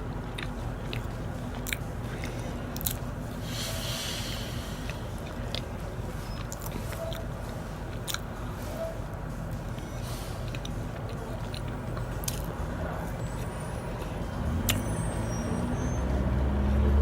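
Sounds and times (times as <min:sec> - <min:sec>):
road traffic rumble: 0:00.0 - 0:17.0
person chewing: 0:00.4 - 0:03.0, 0:08.0 - 0:08.2, 0:10.5 - 0:12.5.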